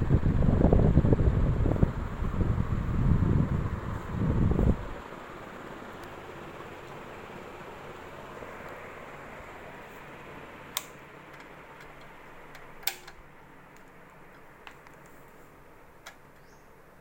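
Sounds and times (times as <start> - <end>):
ceiling fan airy hiss: 0.0 - 17.0
sharp clicks: 10.8 - 15.0.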